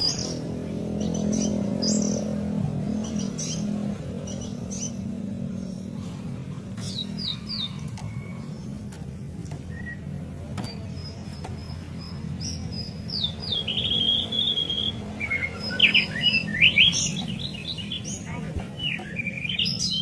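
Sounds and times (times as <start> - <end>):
bird singing whistled notes: 9.5 - 20.0.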